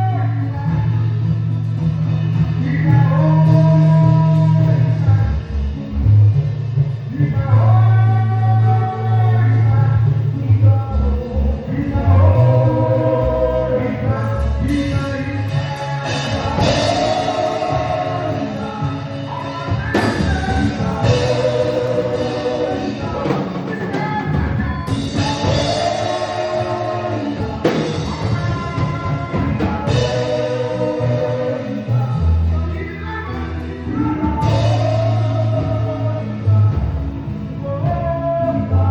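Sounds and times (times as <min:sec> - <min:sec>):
band with bass and drums: 0:00.0 - 0:38.9
group singing in harmony: 0:11.2 - 0:38.9.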